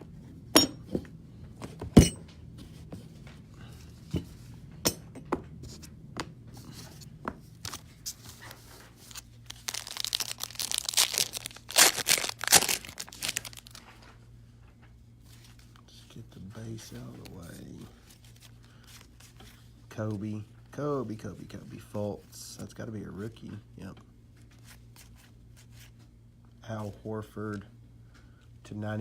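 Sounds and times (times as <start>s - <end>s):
wrapper tearing and crinkling: 9.1s - 13.9s.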